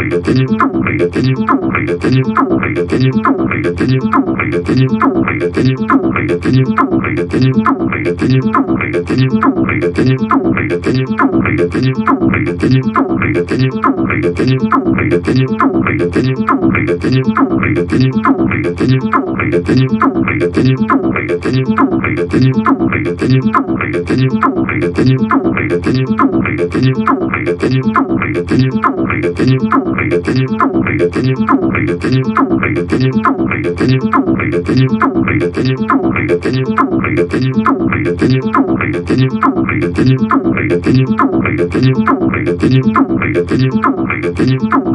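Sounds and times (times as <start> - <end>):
synthesizer chord loop: 0.0 - 44.9.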